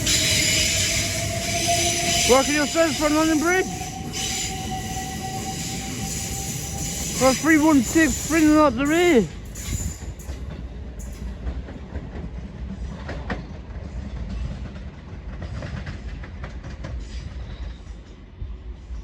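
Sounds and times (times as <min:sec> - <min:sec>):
train rumbling past: 0:00.0 - 0:19.0.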